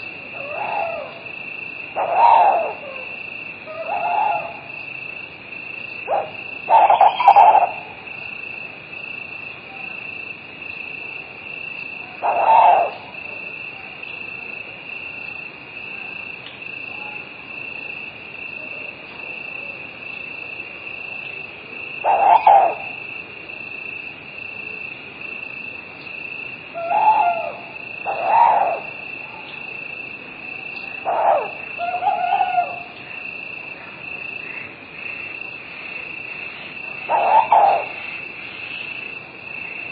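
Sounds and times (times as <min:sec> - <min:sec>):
owl hooting: 0:00.0 - 0:05.1, 0:06.0 - 0:08.3, 0:12.0 - 0:13.7, 0:21.9 - 0:23.2, 0:26.7 - 0:39.9
crickets chirring: 0:00.0 - 0:39.9.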